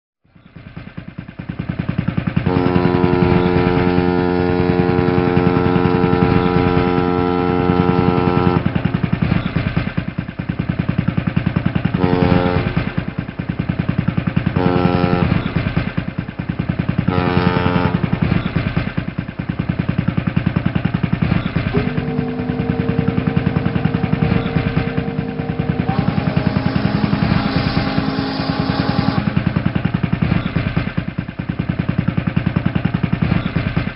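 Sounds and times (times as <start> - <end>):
boat engine throbbing: 1.4 - 33.9
boat horn blasts: 2.5 - 9.2, 12.0 - 13.2, 14.6 - 15.5, 17.1 - 18.2, 21.7 - 30.0
lower-pitched horn note: 2.5 - 9.2, 21.7 - 30.2.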